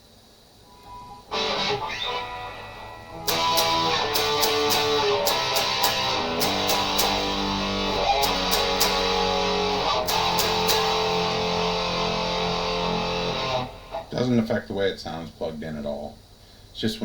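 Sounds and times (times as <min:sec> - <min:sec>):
electric guitar strummed chords: 0:00.7 - 0:14.2.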